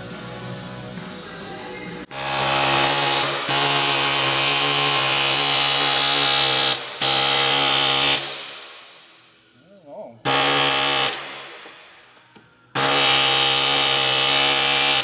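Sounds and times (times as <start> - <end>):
angle grinder on metal: 2.1 - 8.3, 12.8 - 15.0.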